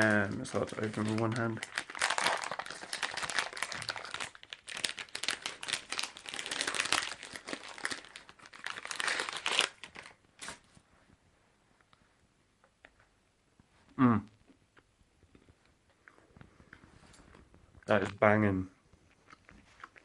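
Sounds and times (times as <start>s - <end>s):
snack packet crinkling and tearing: 0.0s - 10.6s.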